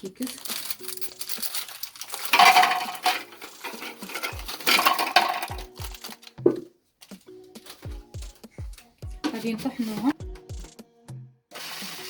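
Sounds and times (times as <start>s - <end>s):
biscuits clattering into container: 0.0s - 7.9s.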